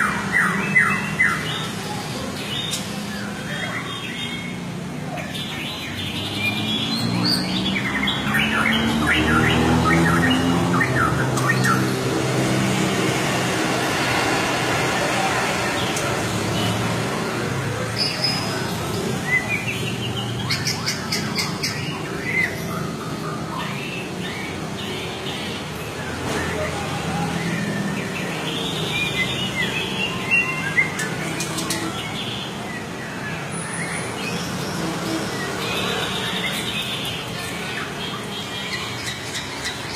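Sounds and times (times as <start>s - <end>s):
songbird chirping: 0.2s - 12.5s.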